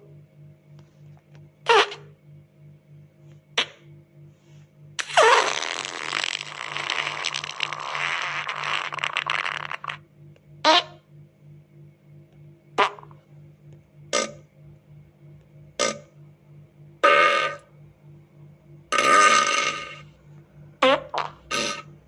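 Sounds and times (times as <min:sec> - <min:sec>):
fart sounds: 0:01.7 - 0:02.1, 0:03.6 - 0:03.8, 0:05.0 - 0:10.0, 0:10.6 - 0:11.0, 0:12.8 - 0:13.2, 0:14.2 - 0:14.4, 0:15.8 - 0:16.1, 0:18.9 - 0:20.0, 0:20.8 - 0:22.0.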